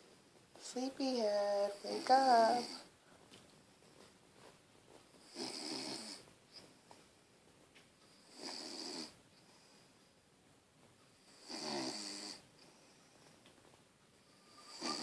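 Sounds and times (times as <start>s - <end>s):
dog snoring: 5.2s - 6.3s, 8.1s - 9.2s, 11.2s - 12.4s, 14.4s - 15.0s.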